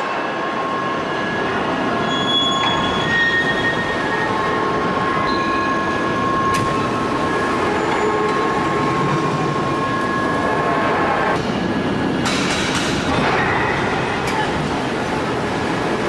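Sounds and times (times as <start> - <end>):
forging press machinery noise: 0.0 - 16.0
short high squeals: 2.0 - 9.1.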